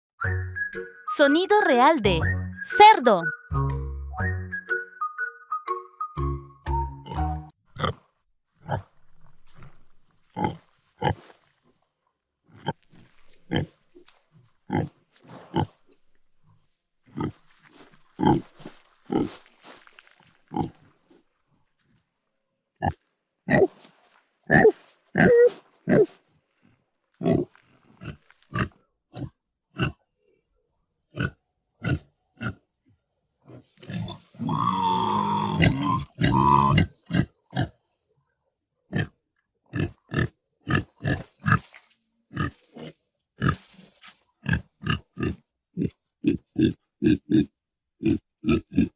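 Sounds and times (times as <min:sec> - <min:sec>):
pig grunting: 0:24.5 - 0:26.2, 0:27.2 - 0:30.0, 0:33.5 - 0:37.7, 0:44.4 - 0:48.9.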